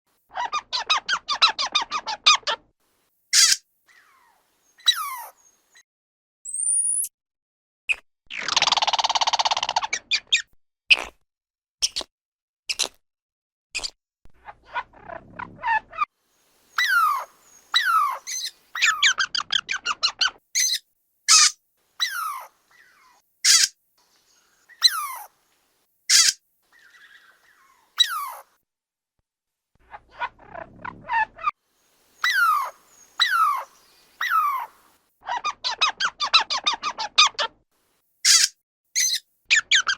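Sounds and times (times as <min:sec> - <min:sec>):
squirrel hissing: 0:03.3 - 0:05.4, 0:15.6 - 0:23.7, 0:24.3 - 0:25.4, 0:26.1 - 0:28.4, 0:31.0 - 0:35.0
squirrel chattering: 0:03.4 - 0:03.6, 0:16.8 - 0:23.7, 0:24.7 - 0:25.3, 0:26.1 - 0:28.4, 0:32.2 - 0:37.4, 0:38.2 - 0:39.9
squirrel squeal falling in pitch: 0:26.1 - 0:26.4, 0:28.0 - 0:28.4, 0:32.2 - 0:34.7, 0:38.3 - 0:39.9.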